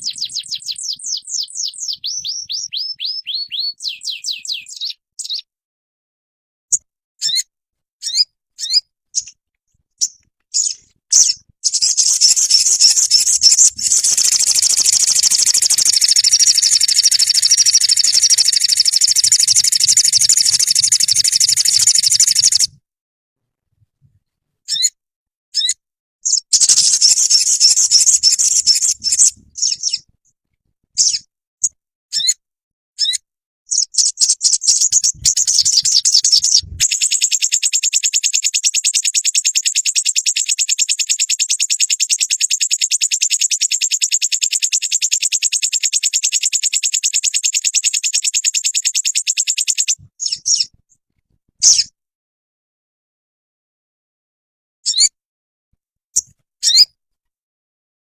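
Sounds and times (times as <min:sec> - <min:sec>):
bird chirping and trilling: 0:00.0 - 0:05.5, 0:06.7 - 0:09.4, 0:10.0 - 0:22.7, 0:24.7 - 0:25.0, 0:25.6 - 0:30.1, 0:31.0 - 0:31.3, 0:32.1 - 0:32.4, 0:33.0 - 0:50.7, 0:51.6 - 0:51.9, 0:54.8 - 0:55.1, 0:56.6 - 0:57.0.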